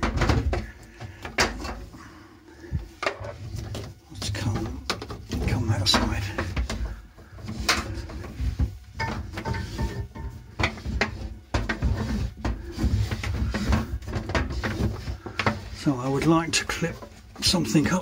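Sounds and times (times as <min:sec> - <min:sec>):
hoses knocking and scraping: 0:00.0 - 0:18.0.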